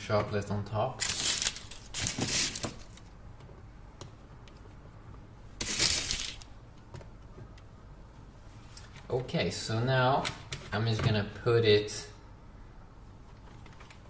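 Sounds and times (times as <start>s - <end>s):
chocolate wrapper crinkling: 1.0s - 3.0s, 5.6s - 6.5s.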